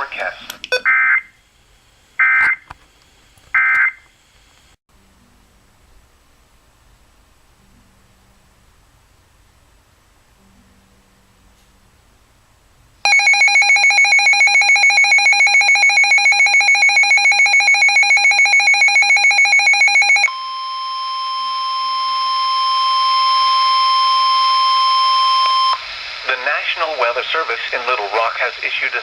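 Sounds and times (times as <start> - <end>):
steady warning alarm tone: 3.6 - 4.0, 13.1 - 25.8
alert alarm buzzing in pulses: 13.1 - 25.8.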